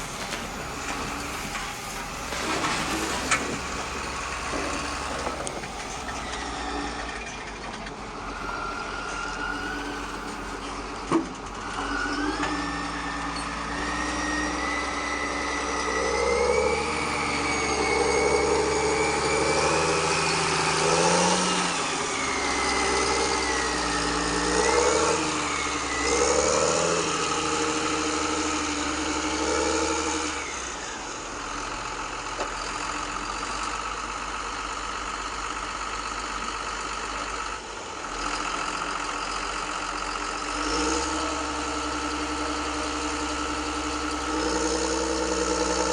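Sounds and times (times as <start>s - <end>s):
motor whine: 0.0s - 28.6s, 40.5s - 45.9s
model engine running: 0.0s - 45.9s.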